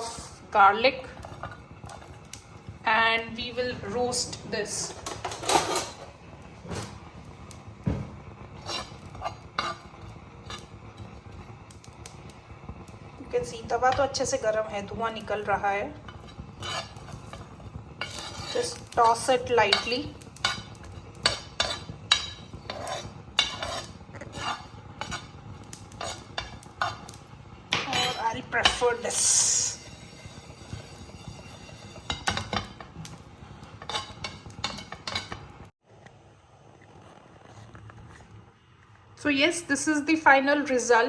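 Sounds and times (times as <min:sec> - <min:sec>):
utensil knocking on griddle: 0:07.7 - 0:11.4, 0:16.0 - 0:35.6.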